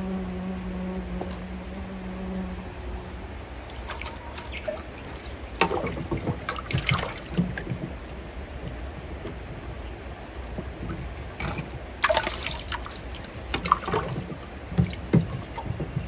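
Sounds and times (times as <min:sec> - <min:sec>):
low rush of flowing water: 0:00.0 - 0:16.0
steady hum: 0:00.0 - 0:16.0
water trickling and splashing: 0:00.0 - 0:16.0
sharp splashes and knocks: 0:03.6 - 0:16.0.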